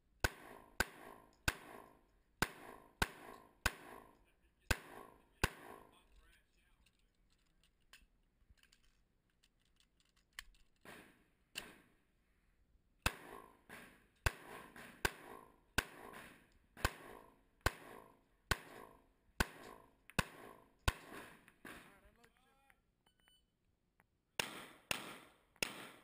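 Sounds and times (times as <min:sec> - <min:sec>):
pistol shots with echo: 0:00.2 - 0:06.1, 0:13.0 - 0:22.2, 0:24.4 - 0:26.0.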